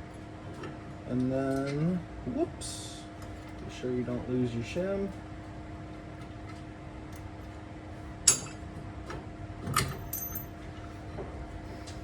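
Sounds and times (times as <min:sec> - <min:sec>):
metallic clinks of steel parts: 0:09.8 - 0:10.5.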